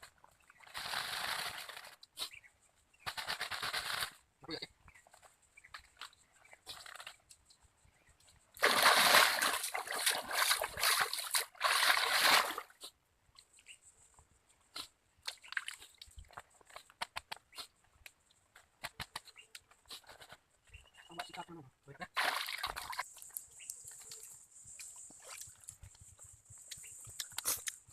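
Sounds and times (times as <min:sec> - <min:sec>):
water splashing and sloshing: 0:08.6 - 0:12.7, 0:22.1 - 0:23.2.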